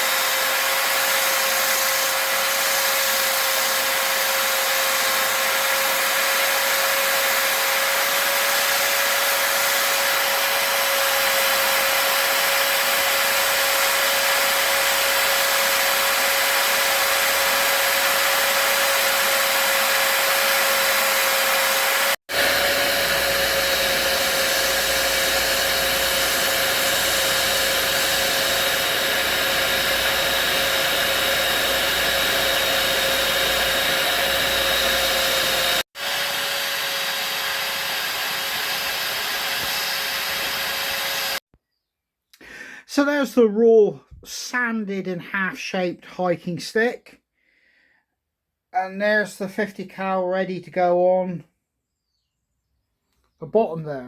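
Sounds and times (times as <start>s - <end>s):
drill sanding wood: 0.0s - 41.4s.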